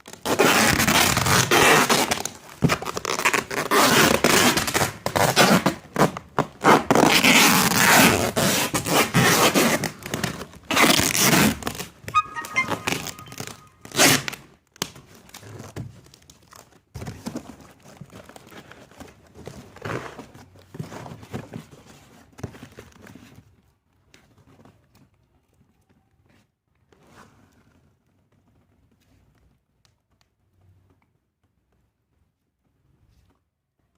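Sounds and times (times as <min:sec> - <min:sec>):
packing tape ripping off roll: 0:00.0 - 0:12.4.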